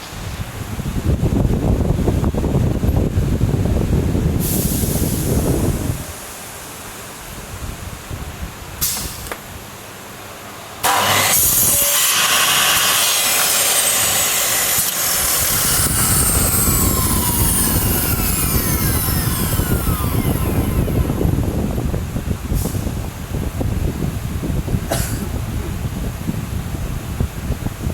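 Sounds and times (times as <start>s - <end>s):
electric saw cutting wood: 10.8s - 21.8s.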